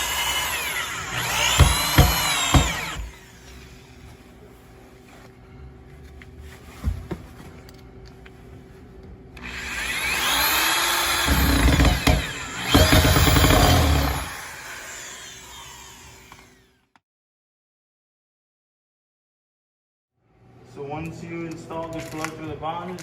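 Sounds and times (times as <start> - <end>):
electric drill driving screw: 0.0 - 3.8, 9.4 - 16.9.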